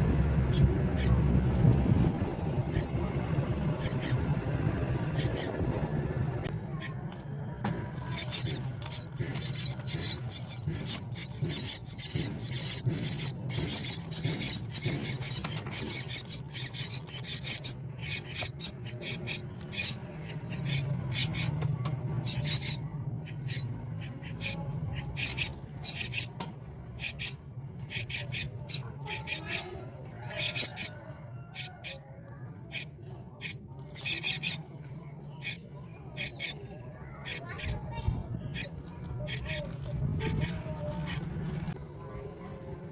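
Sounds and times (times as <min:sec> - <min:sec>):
steady low hum: 0:00.0 - 0:30.9
nestlings begging calls: 0:00.4 - 0:01.2, 0:02.6 - 0:03.0, 0:03.6 - 0:05.9, 0:06.8 - 0:07.0, 0:08.0 - 0:26.3, 0:27.0 - 0:32.0, 0:32.6 - 0:34.6, 0:35.4 - 0:37.9, 0:38.5 - 0:41.2.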